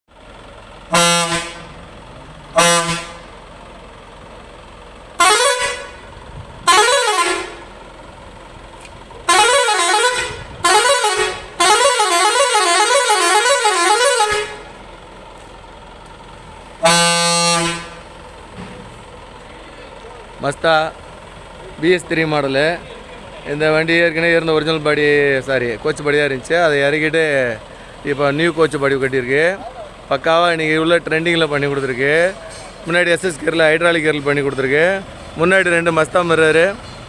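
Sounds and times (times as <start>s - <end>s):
air horn blasts: 0.9s - 1.8s, 2.5s - 3.4s, 5.2s - 7.8s, 9.2s - 14.8s, 16.8s - 18.1s
warbling horn: 0.9s - 1.8s, 2.5s - 3.3s, 5.2s - 7.7s, 9.3s - 14.8s, 16.8s - 18.1s.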